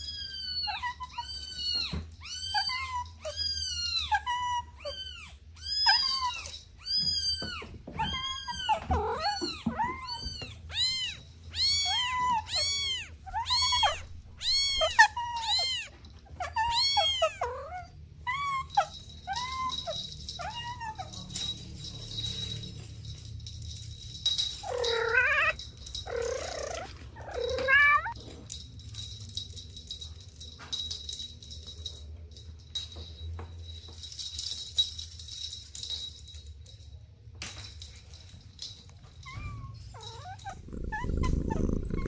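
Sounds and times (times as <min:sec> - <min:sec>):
kittens meowing: 0:00.0 - 0:21.3, 0:24.6 - 0:28.2, 0:39.3 - 0:42.0.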